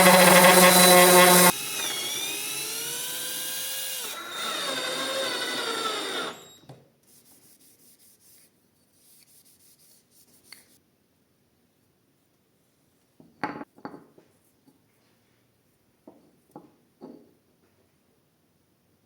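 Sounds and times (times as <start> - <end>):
small power tool motor: 0.0 - 6.7.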